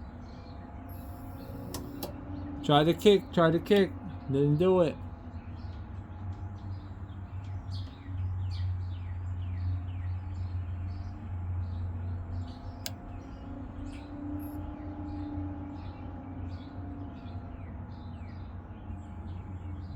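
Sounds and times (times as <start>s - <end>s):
low electrical hum: 0.0s - 15.5s
birds chirping: 0.0s - 19.9s
sharp click: 1.2s - 2.2s.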